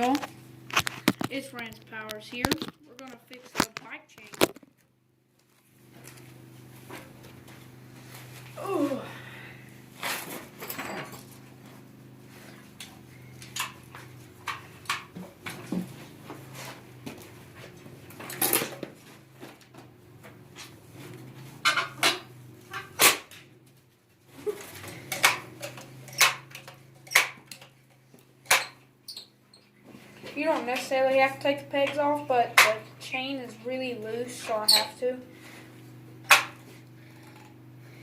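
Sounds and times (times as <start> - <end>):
metal tools clanking on bicycle: 10.6 - 11.4.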